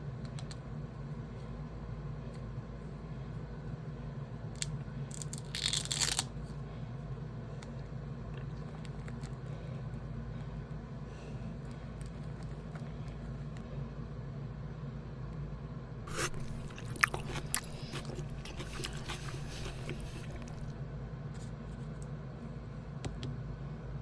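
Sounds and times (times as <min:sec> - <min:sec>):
low background hum: 0:00.0 - 0:24.0
paper crinkling: 0:16.1 - 0:20.7.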